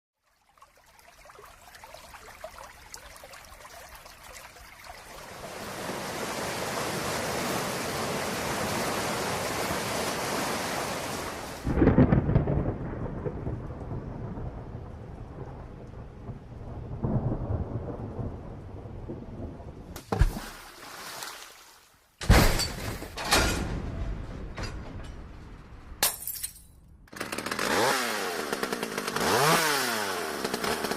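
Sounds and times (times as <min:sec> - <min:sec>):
heavy rain: 0:02.4 - 0:19.9
thunder clap: 0:11.6 - 0:20.0
thunder cracks and crash: 0:11.6 - 0:20.0
thunder rumbling: 0:11.6 - 0:20.0.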